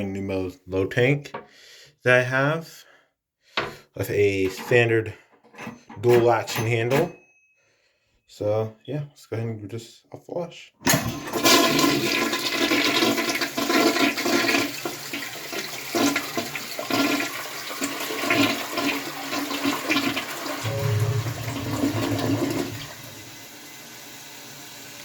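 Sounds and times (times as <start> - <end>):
toilet flushing: 10.9 - 25.0.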